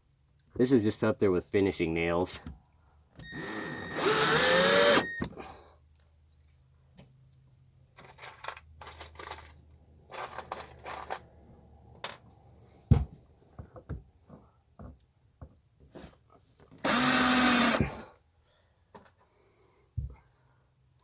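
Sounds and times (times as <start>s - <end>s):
drill driving screw into board: 3.2s - 5.4s, 16.8s - 18.1s.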